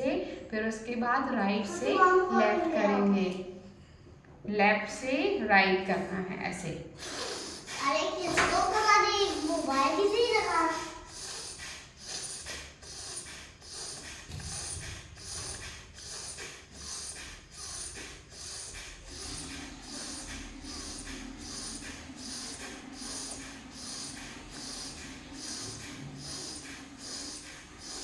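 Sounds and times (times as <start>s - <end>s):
rapid forceful nostril breaths: 6.9s - 28.0s.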